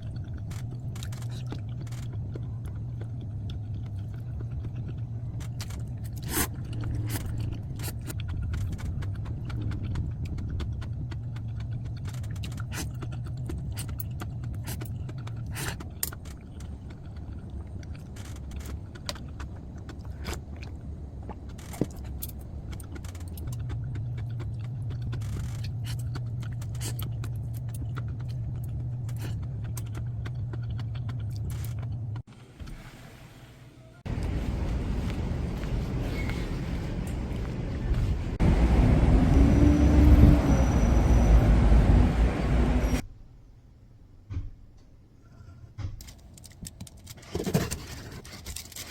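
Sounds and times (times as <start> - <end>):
low machine hum: 33.8 - 43.0.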